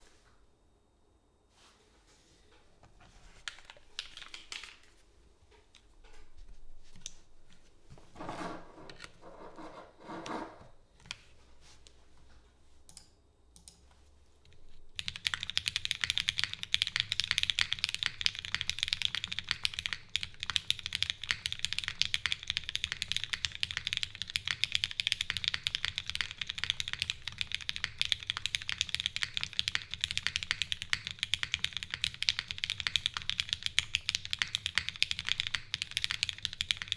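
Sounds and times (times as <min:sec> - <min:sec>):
mechanical keyboard typing: 0:03.5 - 0:04.8, 0:14.5 - 0:36.9.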